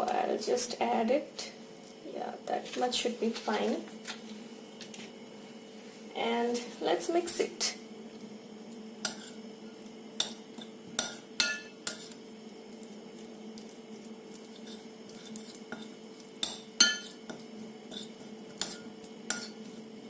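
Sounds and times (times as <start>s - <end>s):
spoon clinking against bowl: 15.8s - 17.2s.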